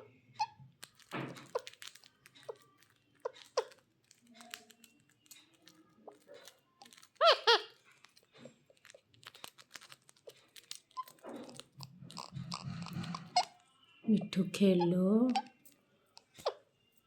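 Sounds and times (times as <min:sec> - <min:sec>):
small crunching clicks: 0:00.3 - 0:13.6
parakeet squawks: 0:03.2 - 0:03.8, 0:06.9 - 0:07.8, 0:10.9 - 0:13.6, 0:16.2 - 0:16.6.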